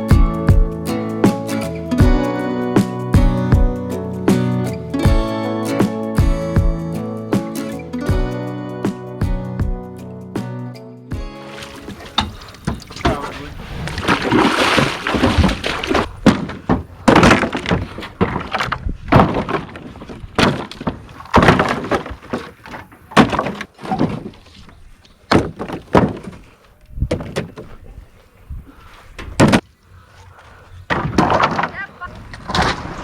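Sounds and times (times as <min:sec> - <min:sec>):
wooden boards thumping and cracking: 0:11.8 - 0:27.8, 0:29.2 - 0:29.7, 0:30.9 - 0:33.0.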